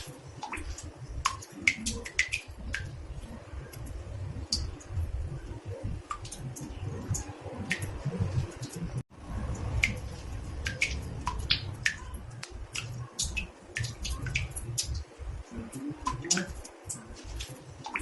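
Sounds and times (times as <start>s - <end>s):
water drops plinking into bathtub: 0.0s - 3.0s, 9.5s - 18.0s
steady low rumble: 0.8s - 17.9s.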